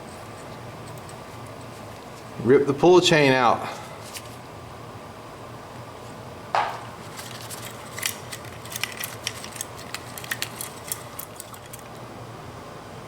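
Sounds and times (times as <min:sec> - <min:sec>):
sharp knock: 0:06.6 - 0:06.8.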